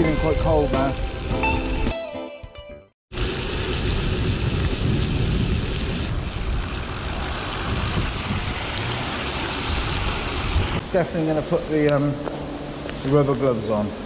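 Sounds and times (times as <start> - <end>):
music: 0.0 - 3.0
heavy rain: 3.1 - 10.8
wind buffeting microphone: 3.2 - 10.8.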